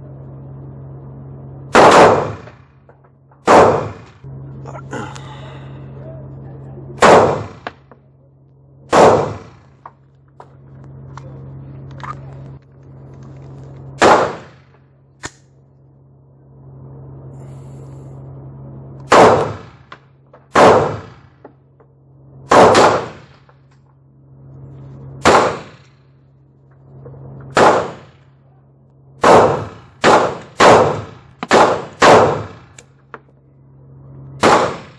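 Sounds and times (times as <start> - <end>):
pistol shots with ringing tail: 1.7 - 2.7, 3.4 - 4.2, 7.0 - 7.9, 8.9 - 9.8, 14.0 - 15.4, 19.1 - 21.4, 22.4 - 23.5, 25.2 - 25.9, 27.5 - 28.3, 29.2 - 32.8, 34.4 - 34.9.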